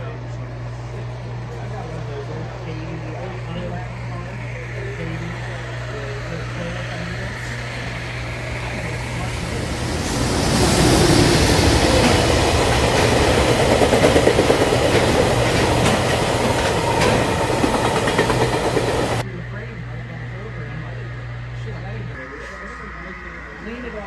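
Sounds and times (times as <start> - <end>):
freight train wheels rumbling: 1.0 - 19.3.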